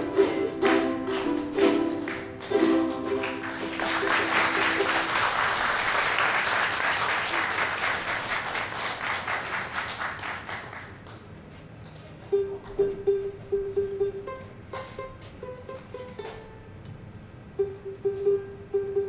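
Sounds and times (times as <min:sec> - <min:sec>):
plucked string instrument notes: 0:00.0 - 0:05.2, 0:12.3 - 0:16.8, 0:17.5 - 0:19.0
audience applause: 0:00.0 - 0:11.2.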